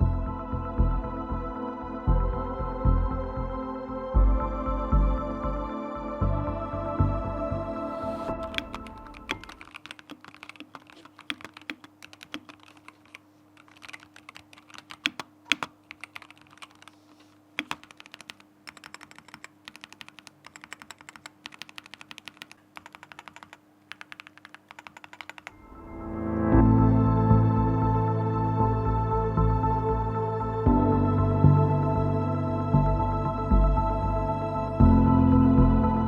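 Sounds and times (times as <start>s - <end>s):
keyboard typing: 8.3s - 25.6s.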